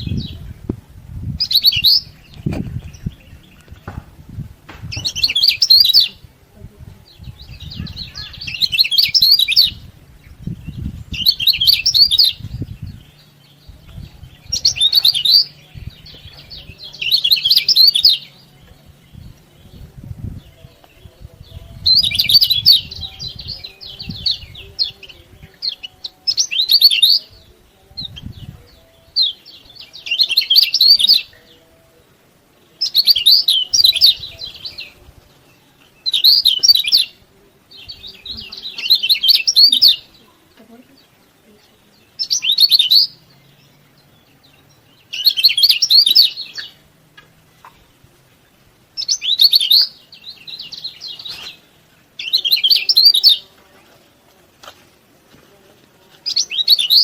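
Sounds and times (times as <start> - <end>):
bird singing chattering bursts: 4.8 - 6.2, 7.1 - 19.4, 29.2 - 31.3, 36.0 - 37.2, 45.0 - 46.8, 49.0 - 53.5.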